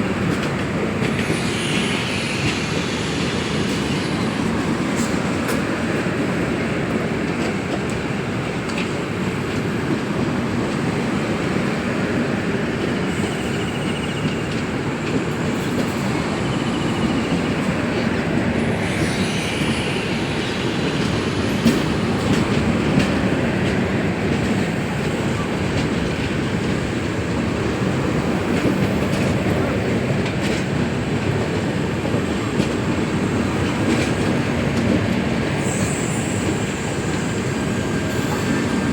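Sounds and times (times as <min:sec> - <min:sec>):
train wheels rumbling on rails: 0:00.0 - 0:38.9.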